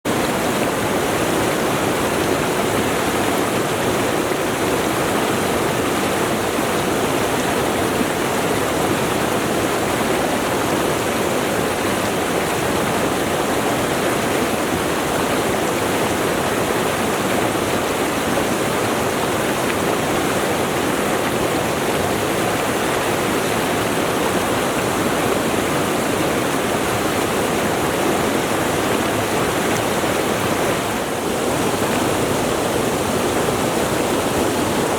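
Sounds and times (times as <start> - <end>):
stream rushing over rocks: 0.1 - 34.9.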